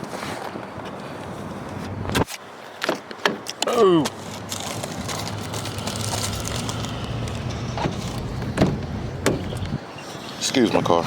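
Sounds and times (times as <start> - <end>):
car engine humming: 4.1 - 10.3.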